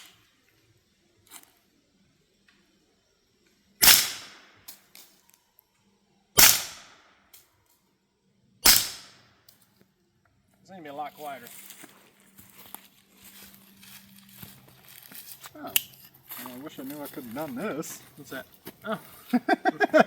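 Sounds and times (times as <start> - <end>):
suppressed gunshots: 3.8 - 4.5, 6.4 - 7.0, 8.6 - 9.2.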